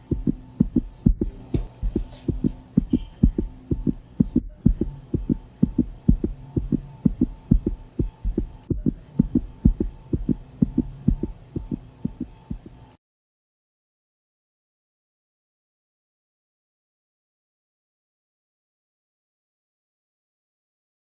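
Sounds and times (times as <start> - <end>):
fast heartbeat pulses: 0.0 - 12.9
steady hum: 0.0 - 13.0.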